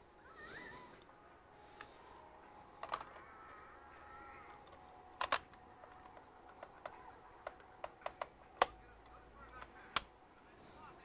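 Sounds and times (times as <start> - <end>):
clicks of small hard parts: 2.8 - 3.3, 4.4 - 10.1.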